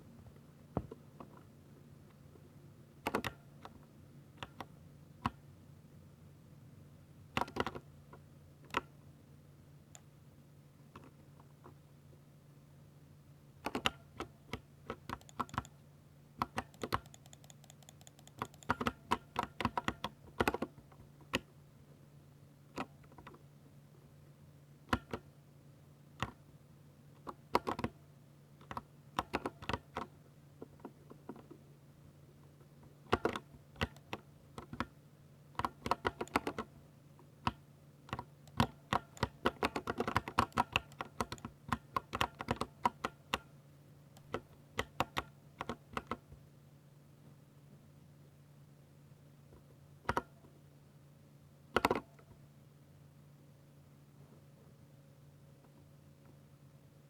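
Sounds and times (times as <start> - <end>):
typing on mechanical keyboard: 15.0 - 15.8, 16.4 - 20.7, 35.6 - 36.7, 38.1 - 43.4.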